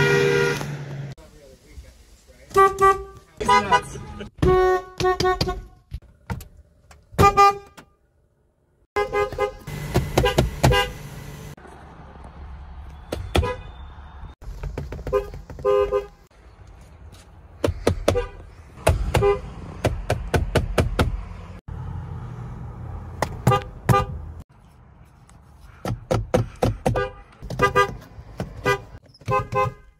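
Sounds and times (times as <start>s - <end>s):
locomotive air horn blasts: 0.0s - 0.8s, 2.5s - 5.7s, 7.2s - 7.8s, 9.0s - 11.1s
diesel engine rumble: 8.1s - 13.0s.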